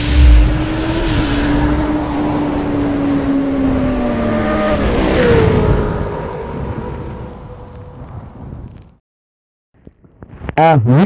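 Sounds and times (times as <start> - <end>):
motorcycle engine revving high: 0.0 - 7.5.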